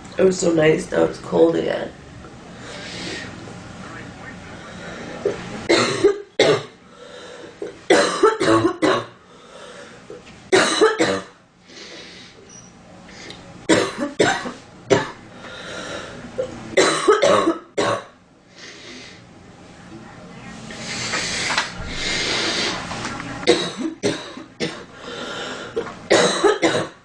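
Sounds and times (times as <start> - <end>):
girl coughing: 5.7 - 6.7, 7.9 - 9.2, 10.5 - 11.4, 13.7 - 15.2, 16.8 - 18.1, 23.5 - 24.9, 26.1 - 27.0.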